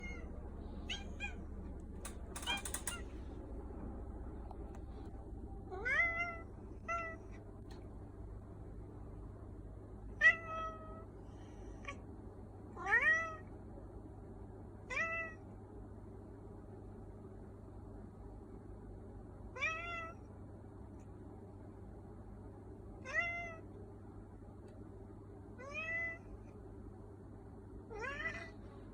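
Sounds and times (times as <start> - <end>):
brief rattling: 0.1 - 5.1
cat meowing: 25.6 - 26.3, 27.9 - 28.6.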